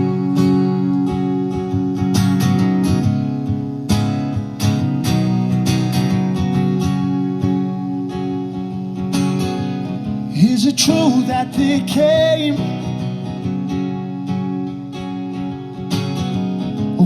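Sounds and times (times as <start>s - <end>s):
acoustic guitar strumming: 0.0s - 17.0s
person singing: 10.3s - 13.1s.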